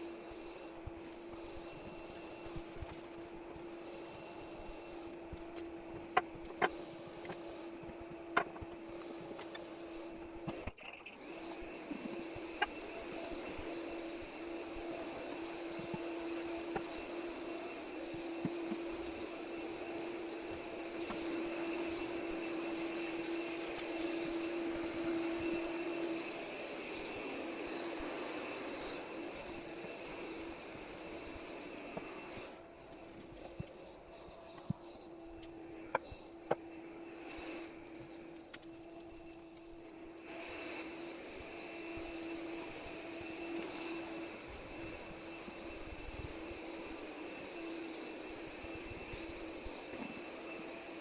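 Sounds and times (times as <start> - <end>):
vacuum cleaner running: 0.0 - 51.0.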